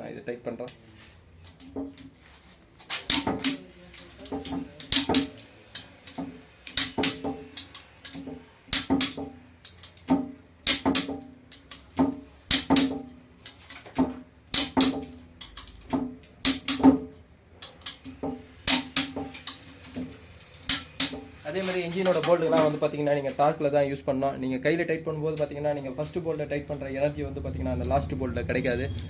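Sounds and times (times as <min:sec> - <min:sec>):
music with percussive beat: 0:04.4 - 0:05.4, 0:06.2 - 0:09.4, 0:12.0 - 0:13.2, 0:14.0 - 0:15.4.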